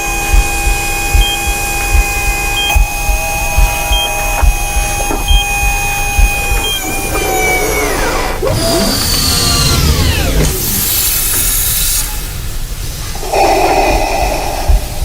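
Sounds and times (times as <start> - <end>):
low pulse: 0.0 - 10.8, 13.2 - 15.0
electronic hum: 0.0 - 11.0.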